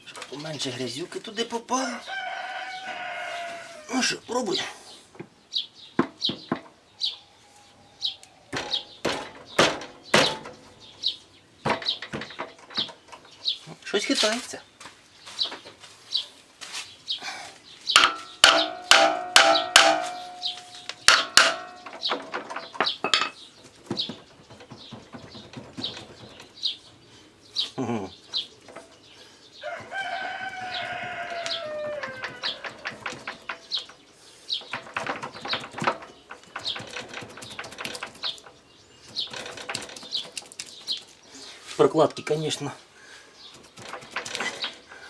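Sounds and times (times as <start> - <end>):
rooster crowing: 1.9 - 3.9, 29.6 - 33.1
metal clanks and knocks: 6.0 - 6.8, 8.5 - 13.6, 17.9 - 27.0, 28.6 - 29.0, 29.8 - 40.3.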